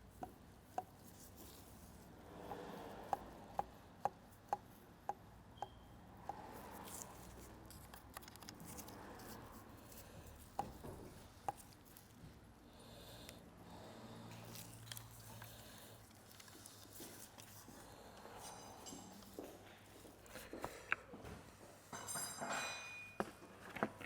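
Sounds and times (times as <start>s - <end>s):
clicks and handling of parts: 6.9s - 9.0s.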